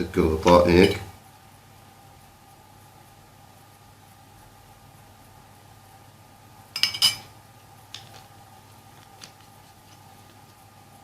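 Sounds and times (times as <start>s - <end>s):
spoon clinking against glass: 6.8s - 7.3s.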